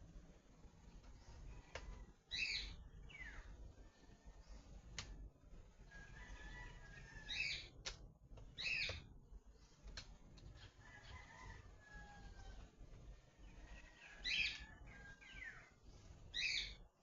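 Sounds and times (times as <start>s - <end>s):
birds chirping: 2.3s - 3.6s, 6.2s - 7.8s, 8.5s - 9.8s, 12.1s - 16.8s
sharp clicks: 7.8s - 8.1s.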